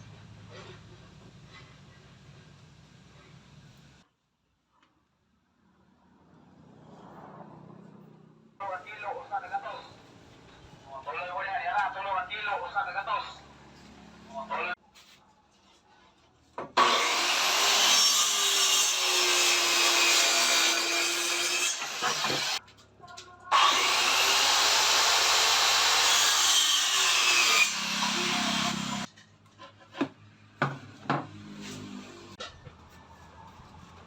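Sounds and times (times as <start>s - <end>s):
electric saw cutting wood: 16.8s - 22.6s, 23.5s - 29.1s.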